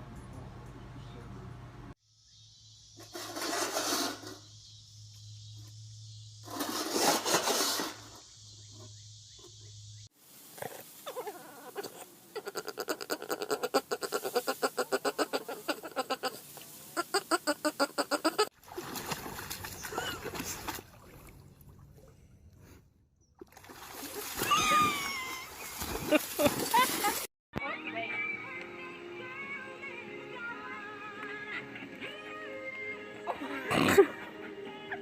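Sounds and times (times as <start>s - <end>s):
dog crying roughly: 11.1s - 16.4s, 17.0s - 18.5s, 24.4s - 25.6s
dog yelping rapidly: 24.4s - 25.6s.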